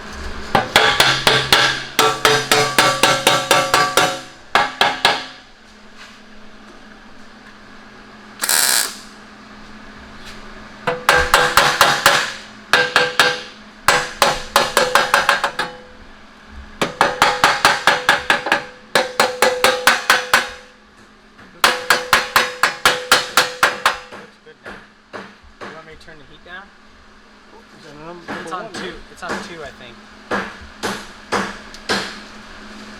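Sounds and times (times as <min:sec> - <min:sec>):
hammer striking metal: 0:00.6 - 0:05.4, 0:10.9 - 0:15.8
short hiss: 0:08.4 - 0:09.1.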